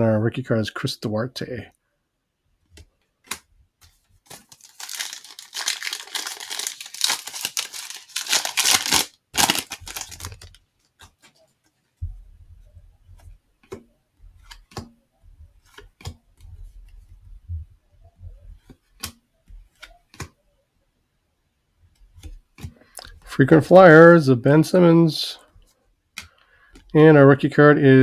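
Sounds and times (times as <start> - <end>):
cards clicking and tapping: 2.7 - 11.4, 13.6 - 15.0
wrapper tearing and crinkling: 4.3 - 10.6.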